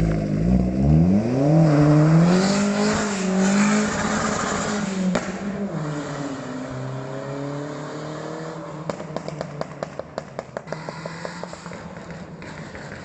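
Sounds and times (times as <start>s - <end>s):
car engine revving: 0.0s - 13.0s
exhaust popping and crackling: 8.9s - 13.0s.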